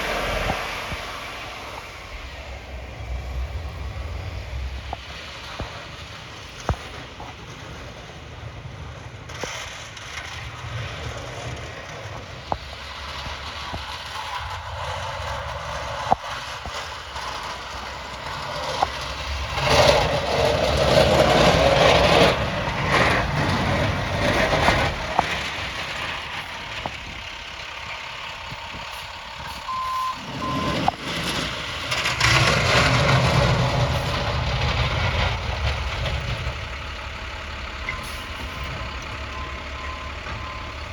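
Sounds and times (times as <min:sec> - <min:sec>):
snowplow trucks driving past: 0:00.0 - 0:40.9
truck reversing beeper: 0:13.3 - 0:16.2, 0:26.0 - 0:31.5, 0:36.4 - 0:40.9.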